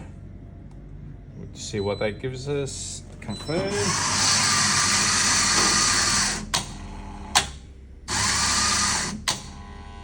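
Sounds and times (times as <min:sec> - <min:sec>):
grinder motor running: 0:03.7 - 0:07.4, 0:08.1 - 0:10.0.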